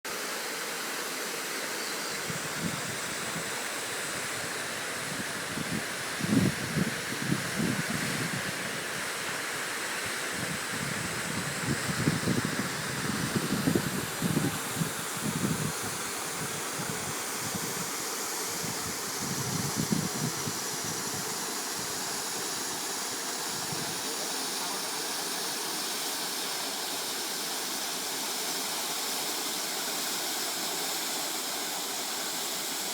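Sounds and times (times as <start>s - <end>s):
wind gusts buffeting microphone: 5.0s - 8.8s, 10.4s - 17.9s, 18.6s - 21.2s.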